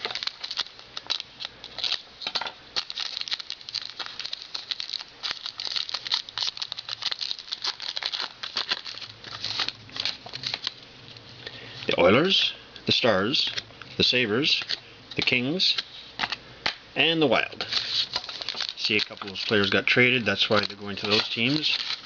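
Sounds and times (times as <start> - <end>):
card pack crinkling and tearing: 0.0 - 11.2, 17.6 - 22.0
cards flicking and shuffling: 17.6 - 22.0.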